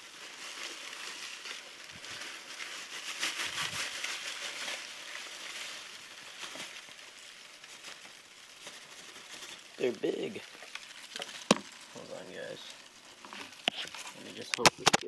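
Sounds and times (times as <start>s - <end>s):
insects rustling and scratching: 0.0s - 15.0s.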